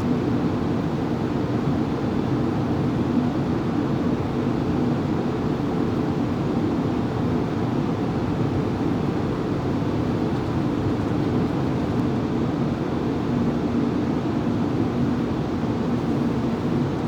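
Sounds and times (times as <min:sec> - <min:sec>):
aircraft cockpit rumble and hiss: 0:04.2 - 0:17.0.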